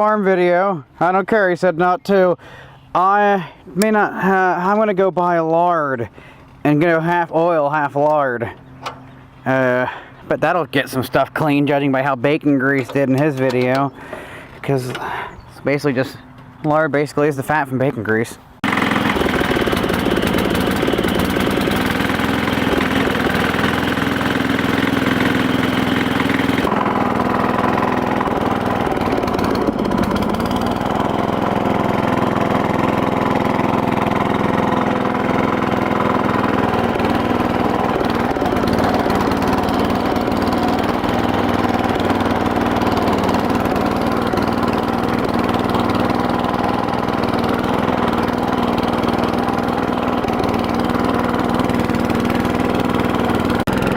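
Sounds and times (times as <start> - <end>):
lawn tractor engine running: 3.8 - 15.4, 18.6 - 53.9.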